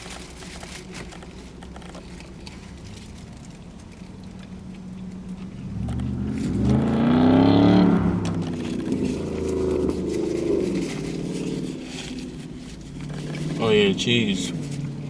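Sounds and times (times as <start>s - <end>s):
motor vehicle engine revving: 4.6s - 15.0s.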